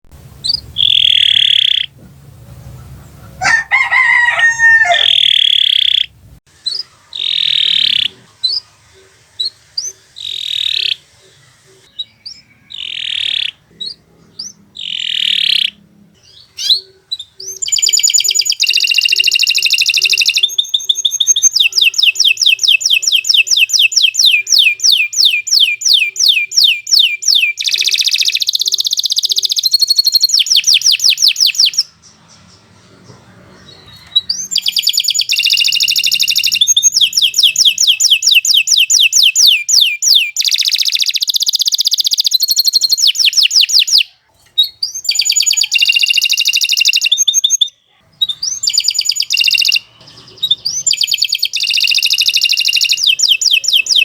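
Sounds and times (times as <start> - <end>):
canary singing trills: 0.2 - 54.0
lower wavering bird call: 0.4 - 2.0, 2.8 - 6.1, 33.7 - 44.2, 45.0 - 47.7, 50.5 - 54.0.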